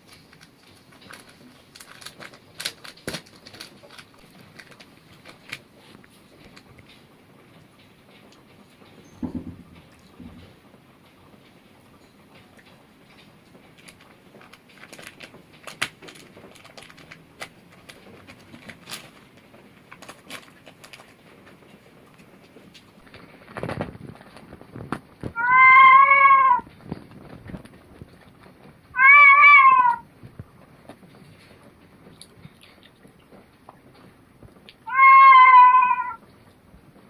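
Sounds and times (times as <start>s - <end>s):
cat meowing: 25.3s - 26.7s, 29.0s - 30.1s, 34.8s - 36.2s.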